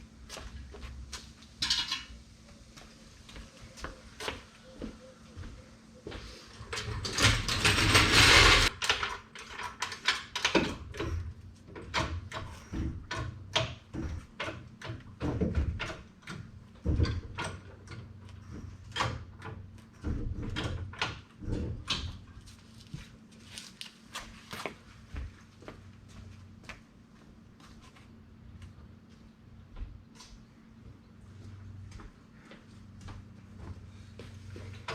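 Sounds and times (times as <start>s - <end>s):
hand tools clicking and knocking: 6.5s - 18.2s.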